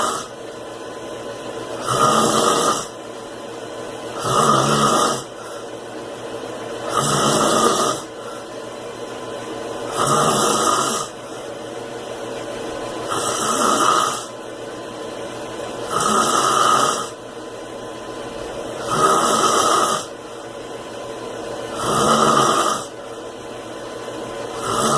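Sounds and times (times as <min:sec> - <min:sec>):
man snoring: 0:00.0 - 0:00.4, 0:01.8 - 0:03.0, 0:04.1 - 0:05.7, 0:06.8 - 0:08.4, 0:09.9 - 0:11.2, 0:13.0 - 0:14.4, 0:15.8 - 0:17.2, 0:18.8 - 0:20.2, 0:21.7 - 0:23.0, 0:24.5 - 0:24.9.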